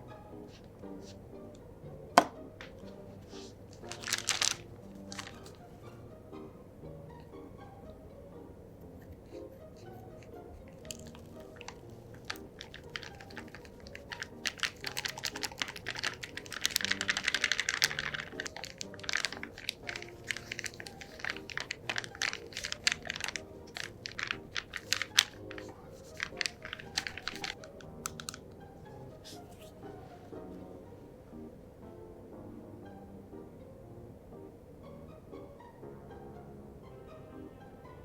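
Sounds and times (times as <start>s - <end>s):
soft background music: 0.0s - 38.0s
packaging rustling: 3.7s - 5.6s, 10.7s - 28.4s
sharp clicks and taps: 23.8s - 28.5s.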